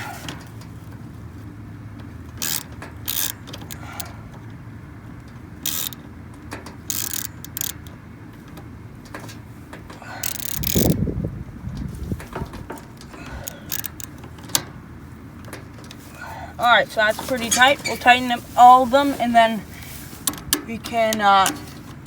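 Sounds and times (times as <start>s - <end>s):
ratchet wrench clicking: 2.4s - 4.1s, 5.6s - 6.0s, 6.6s - 8.0s, 10.2s - 11.0s, 13.4s - 14.5s.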